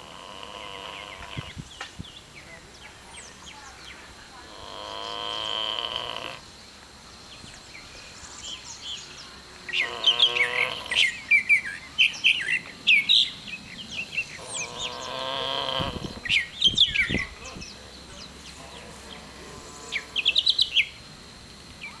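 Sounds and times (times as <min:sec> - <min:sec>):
pig snoring: 0:00.0 - 0:01.6, 0:04.5 - 0:06.4, 0:09.8 - 0:11.1, 0:14.4 - 0:16.3
small birds chirping: 0:00.0 - 0:22.0.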